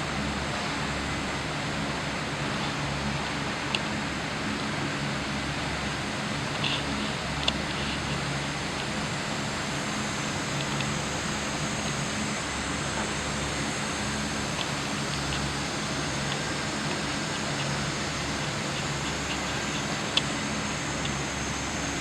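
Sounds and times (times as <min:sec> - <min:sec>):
machine air rush and hum: 0:00.0 - 0:22.0
faint clicks: 0:10.4 - 0:11.0, 0:14.4 - 0:21.2.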